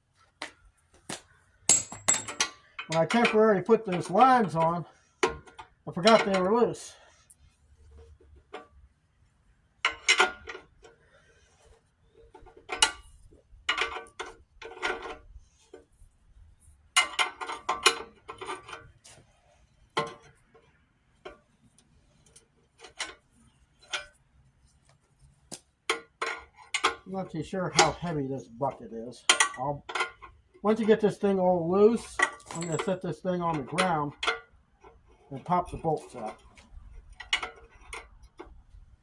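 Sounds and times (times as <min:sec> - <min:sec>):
metal hand tools clinking: 0:01.7 - 0:04.7, 0:32.0 - 0:34.4.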